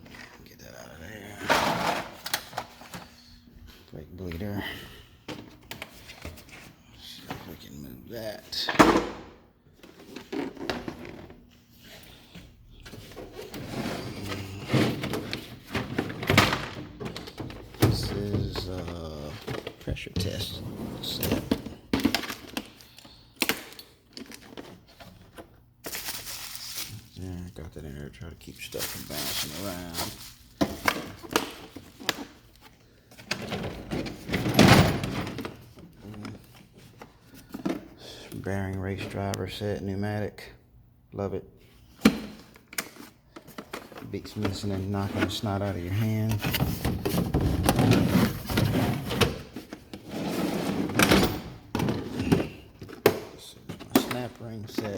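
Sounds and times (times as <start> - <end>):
tools rattling in a drawer: 1.4 - 3.0, 33.1 - 37.8, 42.0 - 54.9.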